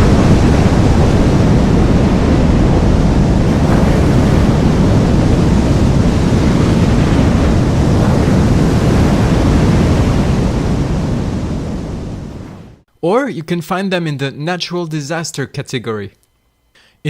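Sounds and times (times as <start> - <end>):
rushing water: 0.0 - 12.6
heavy low rumble: 0.0 - 12.8.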